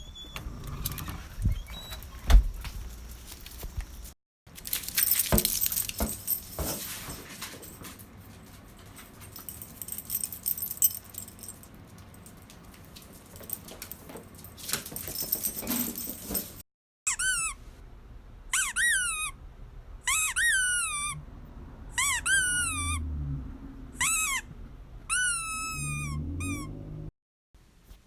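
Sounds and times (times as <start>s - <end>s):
dog collar tags jingling: 4.6s - 16.6s.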